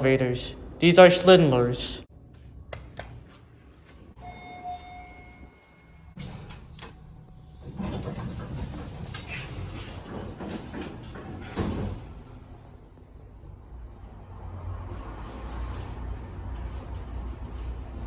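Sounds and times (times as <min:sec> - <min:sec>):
elevator doors sliding: 0:04.1 - 0:18.0
elevator chime tone: 0:04.2 - 0:06.8.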